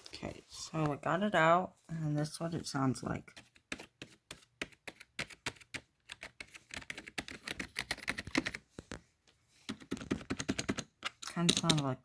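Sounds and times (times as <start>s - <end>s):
keyboard typing: 3.3s - 8.7s, 9.7s - 11.9s.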